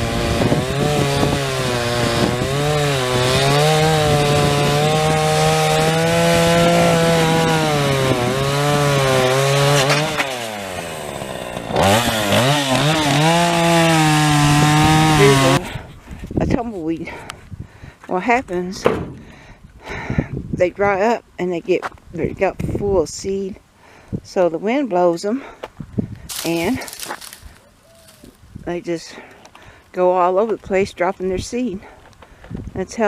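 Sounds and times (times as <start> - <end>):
chainsaw cutting log: 0.0 - 15.8, 18.8 - 19.5, 26.3 - 27.6.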